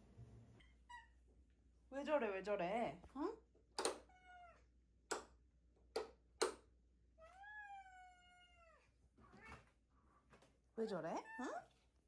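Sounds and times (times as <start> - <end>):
sharp clicks or taps: 3.8 - 4.0, 5.1 - 5.3, 6.0 - 6.6.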